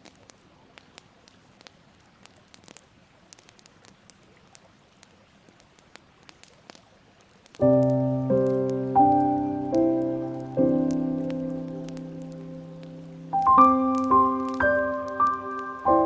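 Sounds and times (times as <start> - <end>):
wood fire crackling: 0.0 - 16.0
piano chords: 7.6 - 16.0.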